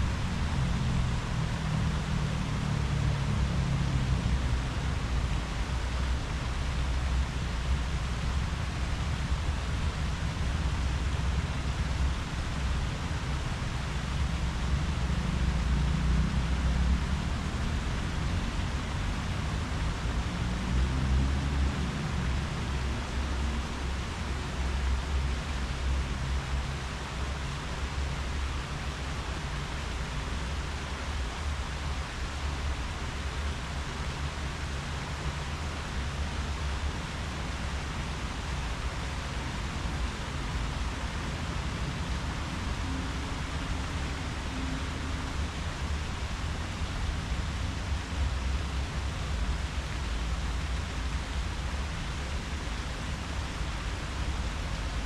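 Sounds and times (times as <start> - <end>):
wind rustling tree leaves: 0.0 - 55.0.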